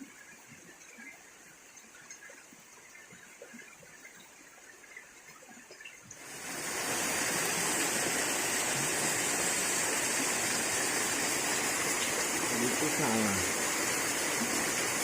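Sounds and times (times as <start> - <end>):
rushing water hiss: 6.1 - 15.0.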